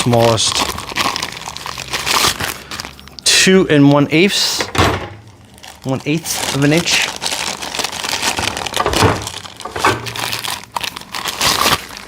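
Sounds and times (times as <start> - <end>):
plastic crinkling and rustling: 0.0 - 3.2, 3.9 - 12.0.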